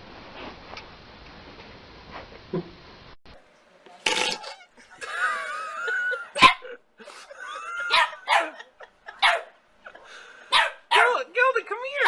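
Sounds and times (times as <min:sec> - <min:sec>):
dog barking and yipping: 0:06.4 - 0:06.7, 0:07.8 - 0:09.6, 0:10.5 - 0:11.2.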